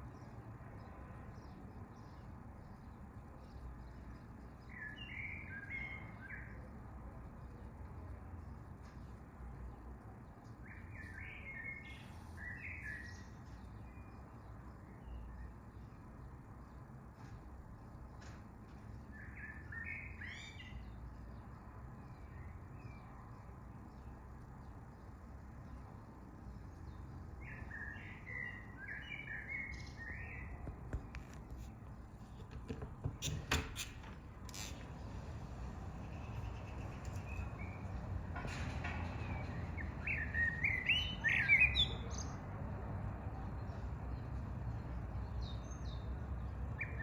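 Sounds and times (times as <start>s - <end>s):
song thrush singing: 0.0s - 6.8s, 9.7s - 16.9s, 18.8s - 33.3s, 39.2s - 42.4s, 43.6s - 47.0s.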